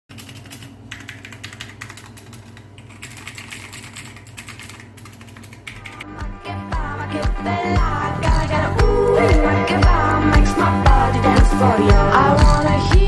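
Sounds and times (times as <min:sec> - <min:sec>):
mechanical keyboard typing: 0:00.1 - 0:06.0.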